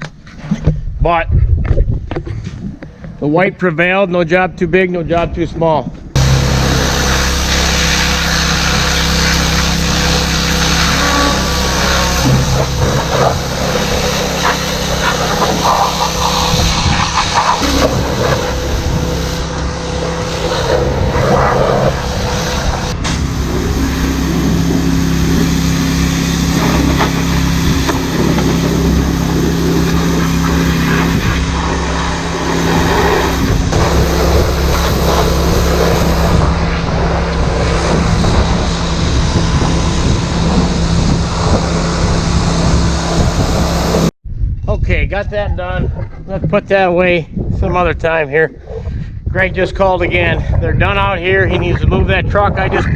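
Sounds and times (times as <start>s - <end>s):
tractor engine running: 6.1s - 44.2s.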